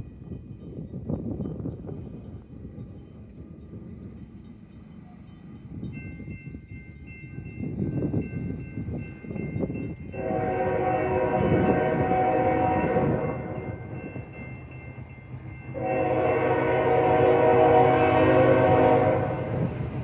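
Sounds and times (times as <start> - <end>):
wind buffeting microphone: 0.0 - 20.0
locomotive air horn blast: 10.2 - 13.4, 15.8 - 19.8.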